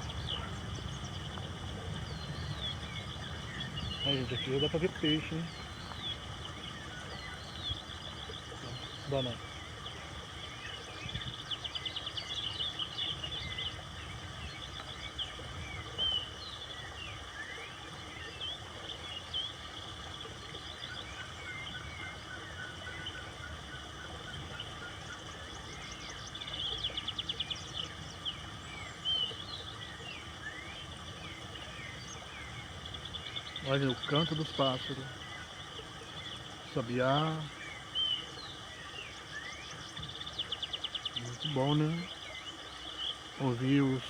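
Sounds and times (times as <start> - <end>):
birds chirping and whistling: 0.0 - 18.6
low background rush: 0.0 - 44.0.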